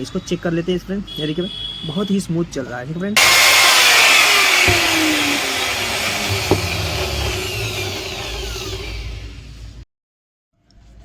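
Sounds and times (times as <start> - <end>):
angle grinder motor whine: 3.2 - 9.4.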